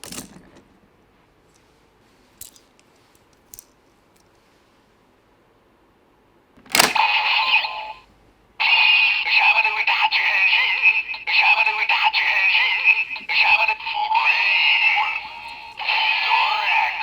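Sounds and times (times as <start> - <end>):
plastic toy clicks: 6.6 - 7.1.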